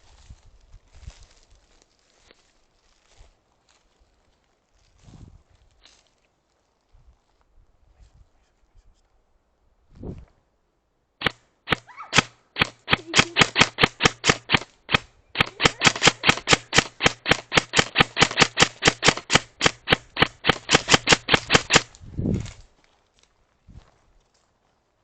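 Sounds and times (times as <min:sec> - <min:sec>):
airsoft gun shots: 0:11.2 - 0:22.0.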